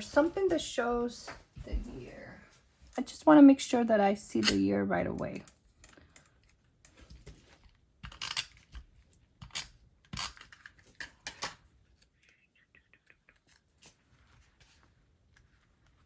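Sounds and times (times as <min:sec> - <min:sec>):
paper rustling: 0:13.3 - 0:16.0.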